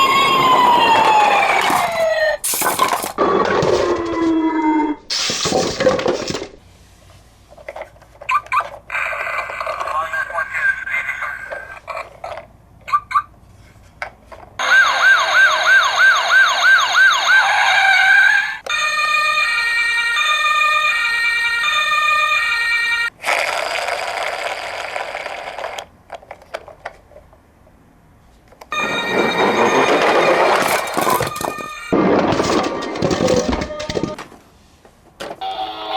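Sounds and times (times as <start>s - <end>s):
high-low two-tone siren: 0.0s - 2.4s, 14.6s - 23.1s
yelp siren: 0.0s - 2.4s, 3.2s - 5.0s, 14.6s - 23.1s, 28.7s - 30.3s.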